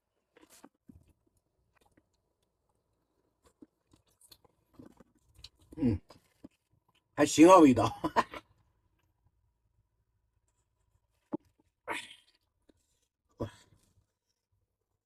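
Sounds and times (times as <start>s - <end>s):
faint chewing: 0.0s - 7.2s, 10.4s - 14.5s.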